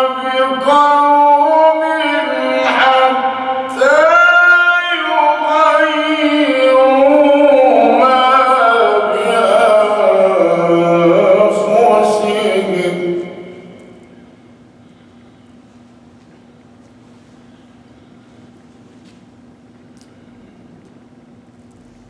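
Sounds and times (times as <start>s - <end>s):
man reciting melodically: 0.0s - 13.8s.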